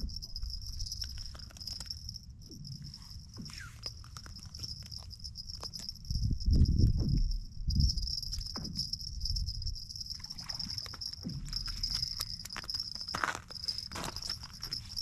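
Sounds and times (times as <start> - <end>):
low knocks: 6.3 - 9.8.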